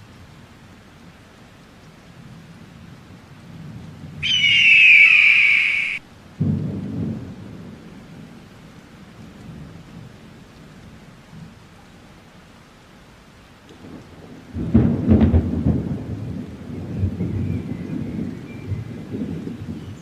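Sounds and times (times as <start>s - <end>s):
steady rain: 0.0s - 20.0s
high-pitched falling tone: 4.2s - 6.0s
thunder: 6.4s - 8.3s, 13.7s - 20.0s.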